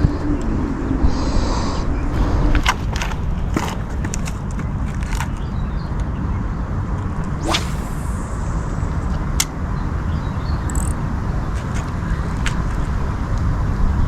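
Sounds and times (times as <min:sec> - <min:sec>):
fishing rod whooshing: 0:07.4 - 0:09.5
low rumble: 0:07.4 - 0:09.5.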